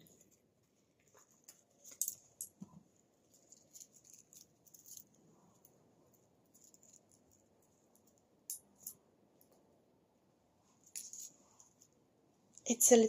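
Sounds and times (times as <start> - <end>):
wristwatch clicks and rattling: 3.3 - 9.6.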